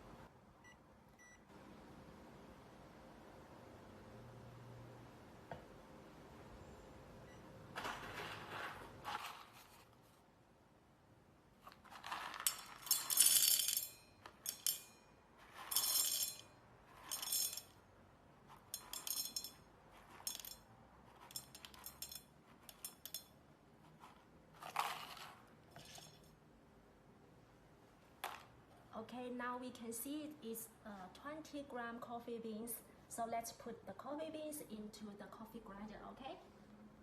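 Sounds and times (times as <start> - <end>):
coffee beans rattling into container: 7.8 - 9.8, 11.7 - 14.8, 15.4 - 17.7, 24.6 - 26.2.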